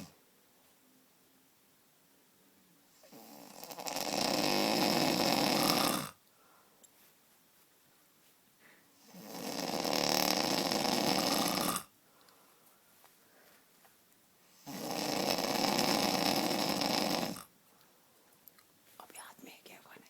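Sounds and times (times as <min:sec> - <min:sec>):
man snoring heavily: 0:03.0 - 0:06.2, 0:09.0 - 0:11.9, 0:14.6 - 0:17.5.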